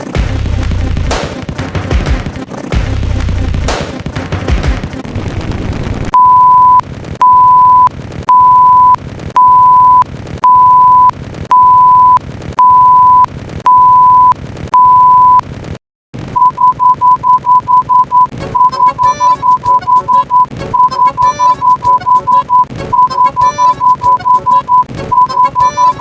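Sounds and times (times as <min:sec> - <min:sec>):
noise: 0:00.0 - 0:26.0
electronic beeps: 0:06.1 - 0:15.4, 0:16.4 - 0:26.0.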